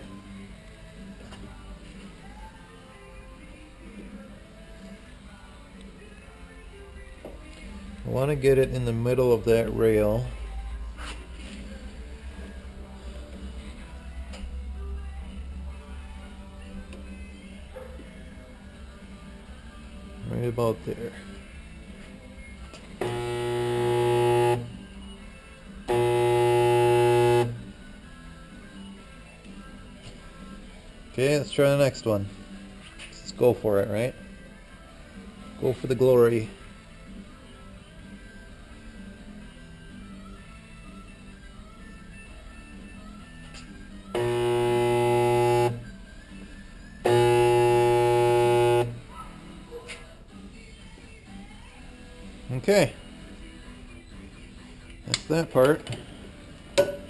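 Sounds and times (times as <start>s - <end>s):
spot welder buzzing: 23.0s - 24.8s, 25.9s - 27.7s, 44.2s - 45.9s, 47.1s - 49.0s.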